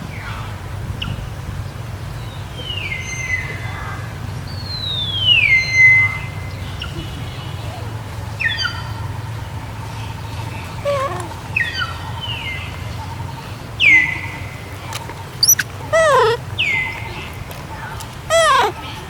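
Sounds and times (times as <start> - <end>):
macaques squeaking and chirping: 10.8 - 12.0, 15.2 - 17.3, 18.3 - 19.0.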